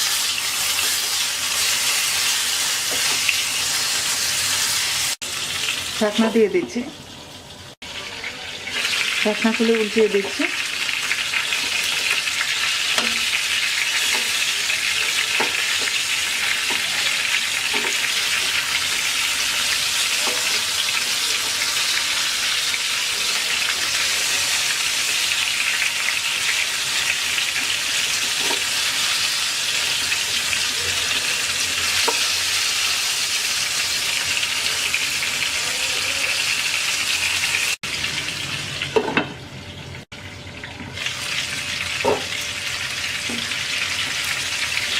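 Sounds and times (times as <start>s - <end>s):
aubergine sizzling in hot oil: 0.0s - 44.9s.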